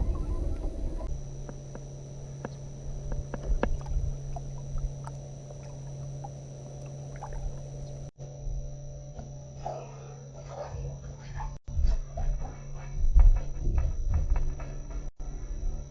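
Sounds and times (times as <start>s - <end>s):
boat engine hum: 0.0s - 8.2s
low rumble: 0.0s - 8.7s.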